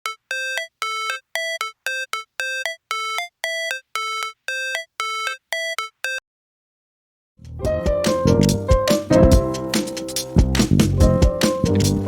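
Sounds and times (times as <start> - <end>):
synthesizer beeping melody: 0.0 - 6.2.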